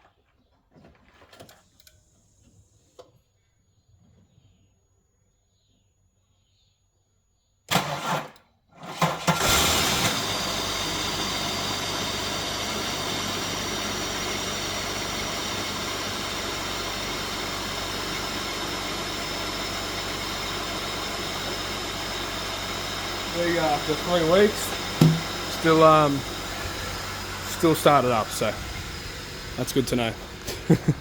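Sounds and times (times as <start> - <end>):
car engine cranking: 7.7 - 31.0
car engine idling: 9.4 - 31.0.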